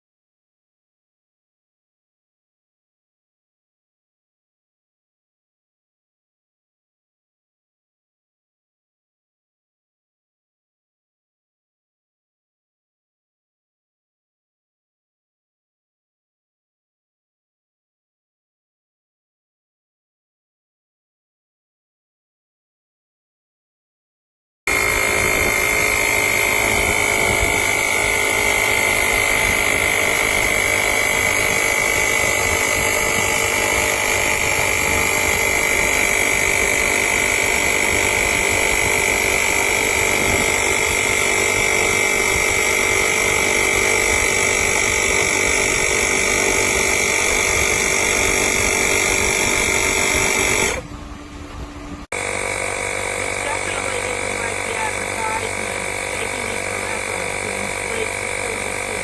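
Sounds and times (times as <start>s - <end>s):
tire inflator compressor buzzing: 24.7s - 59.0s.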